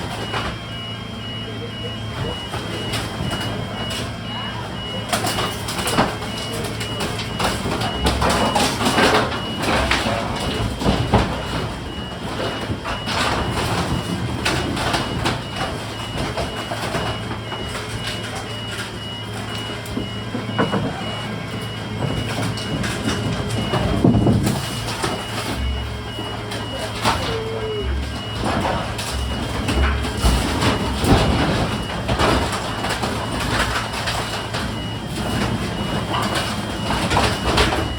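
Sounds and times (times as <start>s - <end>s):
reversing alarm beeping: 0.0s - 37.9s
truck engine hum: 0.0s - 37.9s
bangs and rattles: 22.0s - 37.9s.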